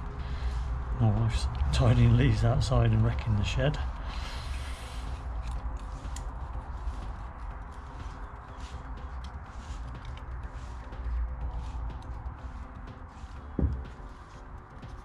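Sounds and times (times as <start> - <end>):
low rumble: 0.0 - 15.0
leaves rustling and scraping: 4.0 - 15.0.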